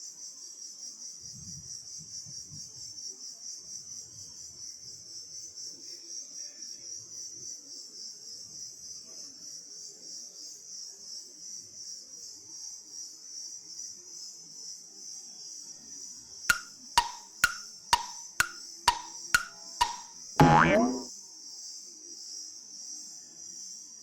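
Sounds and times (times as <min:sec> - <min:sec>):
ringing wood-block knocks: 0:16.5 - 0:21.0
loud boing-like sweep: 0:20.4 - 0:21.1.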